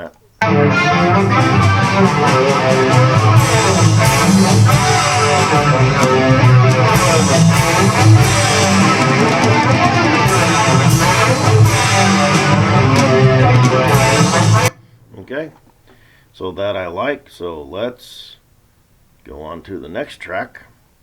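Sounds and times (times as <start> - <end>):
strummed guitar: 0.4 - 14.8
drum beat with reverb: 0.8 - 14.7.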